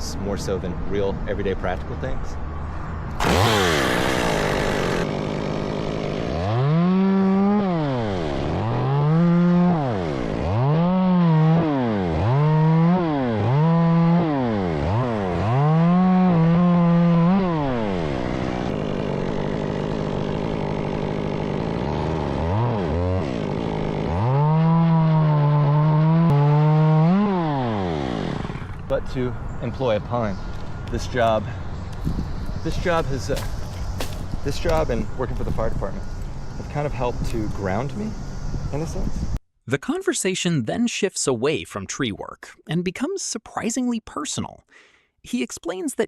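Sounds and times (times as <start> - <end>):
chainsaw revving and idling: 3.2 - 29.0, 30.3 - 38.4.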